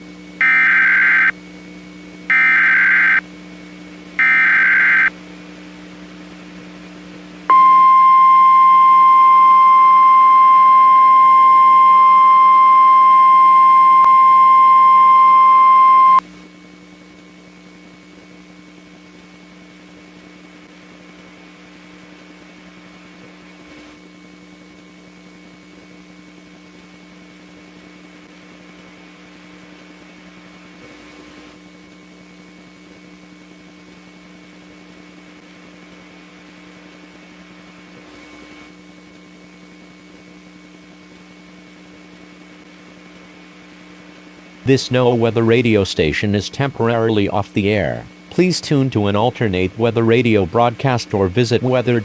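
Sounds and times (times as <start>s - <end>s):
high warning alarm tone: 0.4s - 1.4s, 2.3s - 3.2s, 4.2s - 5.2s, 7.5s - 16.2s
warbling digital data bursts: 4.2s - 5.1s
low hum and hiss: 38.9s - 52.0s.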